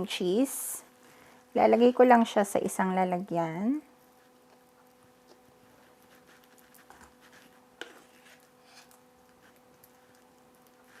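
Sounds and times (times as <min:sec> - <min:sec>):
spoon scraping cream cheese tub: 0:06.2 - 0:09.6.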